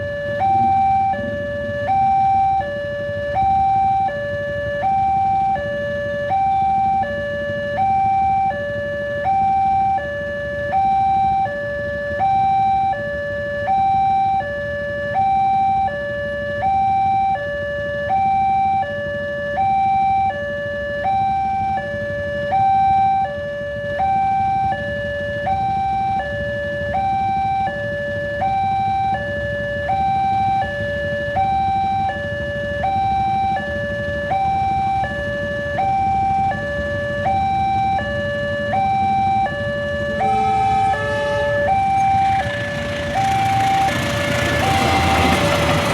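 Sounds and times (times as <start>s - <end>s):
level crossing two-tone alarm: 0.0s - 20.5s, 24.0s - 45.9s.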